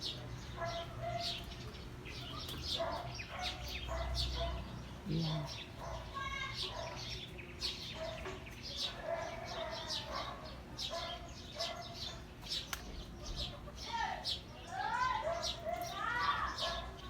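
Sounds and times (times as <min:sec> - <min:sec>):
small birds chirping: 0:00.0 - 0:17.0
chickens clucking: 0:06.7 - 0:14.5.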